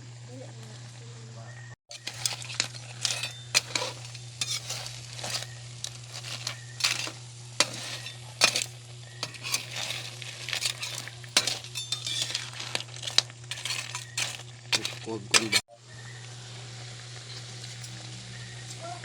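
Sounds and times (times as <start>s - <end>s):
steady low hum: 0.0s - 19.0s
food sizzling: 0.1s - 19.0s
metal utensil scraping pan: 1.9s - 15.7s.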